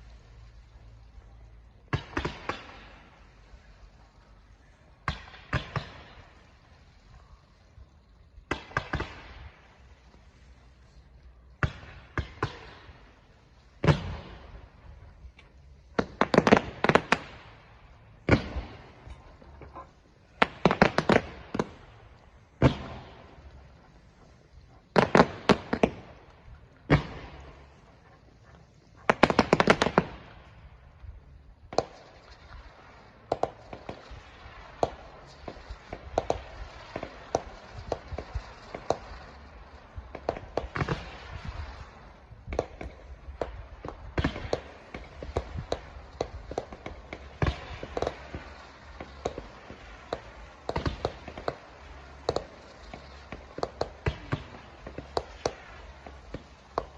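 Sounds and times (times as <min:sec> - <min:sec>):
fireworks popping and crackling: 0:00.0 - 0:56.9.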